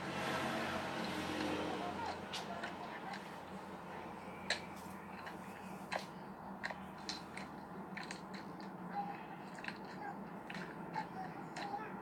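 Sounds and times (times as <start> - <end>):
small clicks and taps: 4.4 - 11.8.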